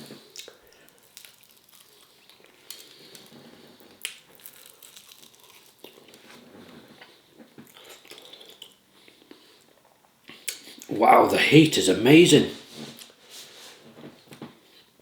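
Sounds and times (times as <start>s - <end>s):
person chewing chicken wing: 0.1s - 10.9s.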